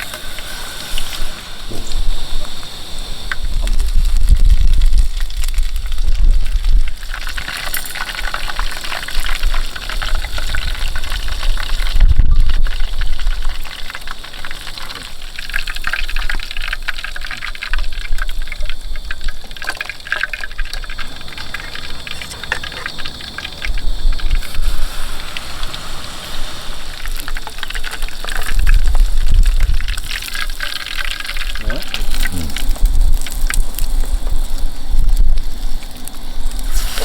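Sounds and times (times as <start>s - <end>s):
shrimp deep-frying in oil: 0.0s - 37.0s
low rumbles: 31.4s - 36.7s.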